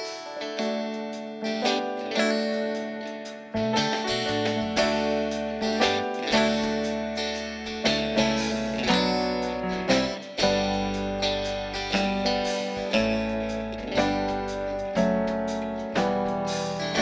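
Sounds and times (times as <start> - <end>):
guitar chords strummed: 0.0 - 17.0
low bass notes: 3.6 - 17.0.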